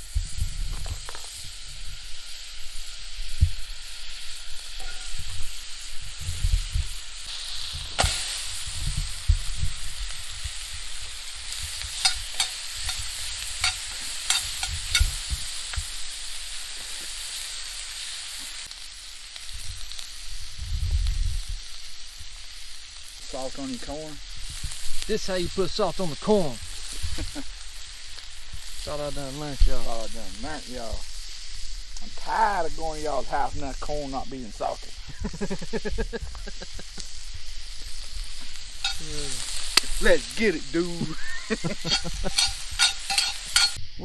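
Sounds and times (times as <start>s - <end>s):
vegetables sizzling in a pan: 0.0s - 44.0s.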